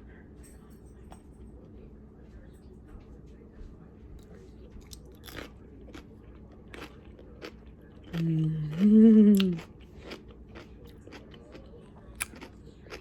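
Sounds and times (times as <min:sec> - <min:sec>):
crunching and chewing pickle: 0:04.2 - 0:13.0
person humming approval: 0:08.2 - 0:09.6.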